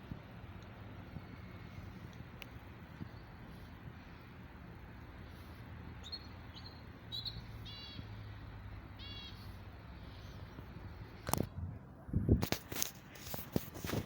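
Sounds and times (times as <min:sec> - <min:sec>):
small bird chirping: 0:05.9 - 0:08.1, 0:09.0 - 0:10.6.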